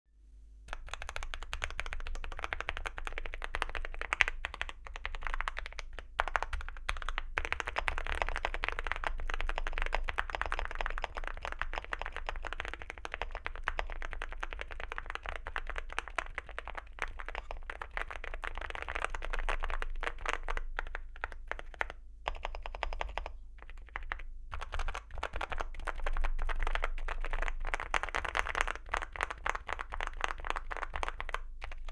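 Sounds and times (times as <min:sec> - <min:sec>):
fast mechanical keyboard typing: 0:00.7 - 0:31.9.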